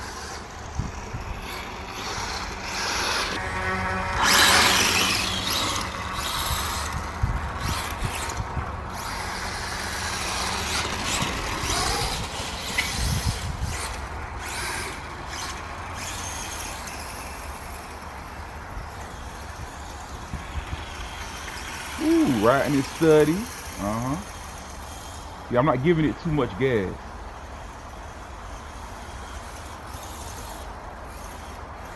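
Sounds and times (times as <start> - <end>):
tyres rolling over ground: 0.0 - 25.3
electric motor whirring: 0.0 - 26.9.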